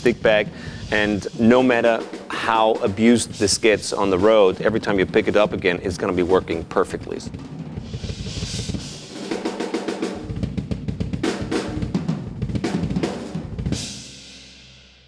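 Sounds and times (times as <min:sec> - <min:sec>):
snare and bass drum strokes: 0:00.0 - 0:14.8.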